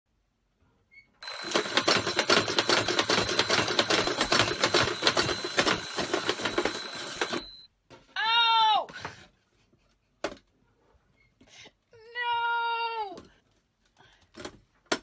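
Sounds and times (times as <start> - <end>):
alarm clock ringing: 1.2 - 7.7.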